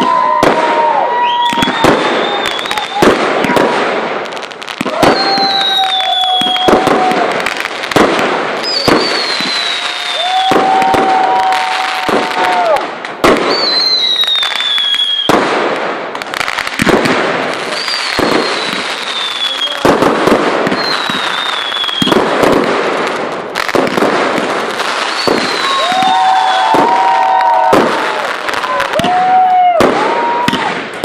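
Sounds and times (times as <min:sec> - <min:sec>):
descending firework whistles: 0:00.0 - 0:03.2, 0:04.8 - 0:07.5, 0:08.6 - 0:15.5, 0:17.6 - 0:22.5, 0:24.8 - 0:30.8
fireworks crackling and banging: 0:00.0 - 0:31.0.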